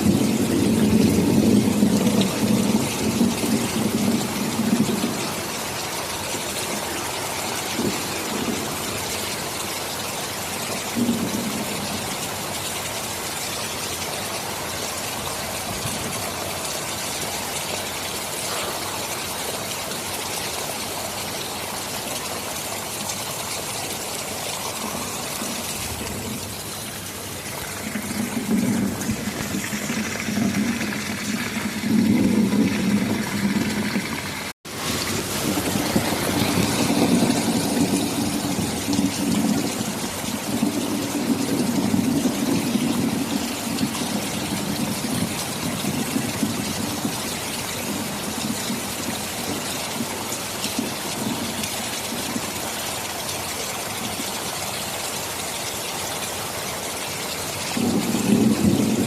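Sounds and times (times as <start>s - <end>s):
rolling thunder: 0.0s - 5.8s, 6.8s - 9.4s, 11.0s - 12.3s, 24.6s - 49.8s, 57.8s - 59.0s
heavy rain hiss: 0.0s - 59.0s.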